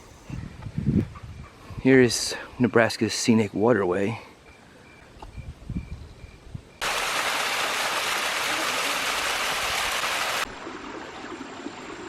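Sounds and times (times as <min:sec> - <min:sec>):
rushing water hiss: 0:06.8 - 0:12.0.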